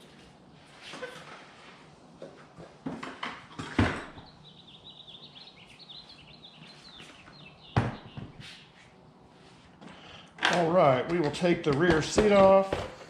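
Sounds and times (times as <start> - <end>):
bird chirping: 4.2 - 8.8
side cases clicking and knocking: 10.4 - 13.0.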